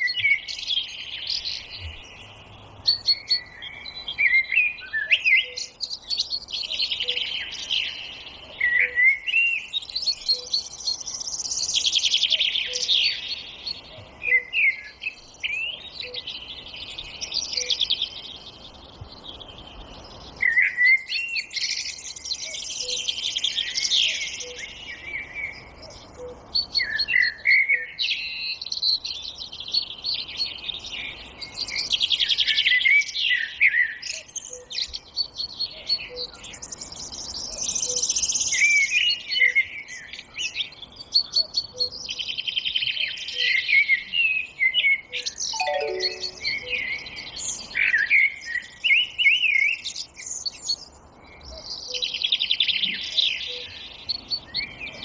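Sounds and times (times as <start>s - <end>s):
songbirds singing: 0.0s - 55.0s.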